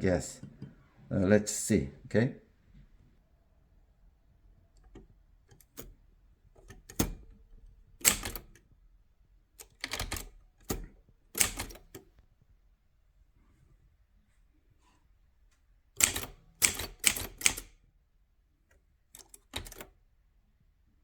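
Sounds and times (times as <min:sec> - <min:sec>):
typewriter keys clacking: 0:08.0 - 0:08.6, 0:09.6 - 0:12.0, 0:16.0 - 0:17.7, 0:19.2 - 0:19.9.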